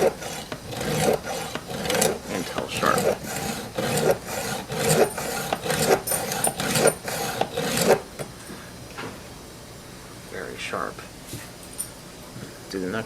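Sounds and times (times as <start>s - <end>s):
file rasping on chainsaw chain: 0.0s - 8.0s.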